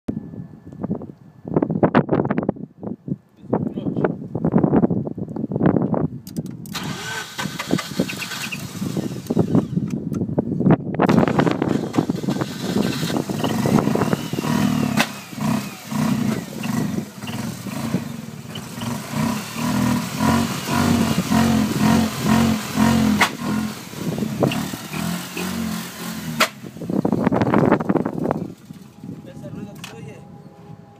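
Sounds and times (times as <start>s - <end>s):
sharp clicks: 6.2s - 6.9s.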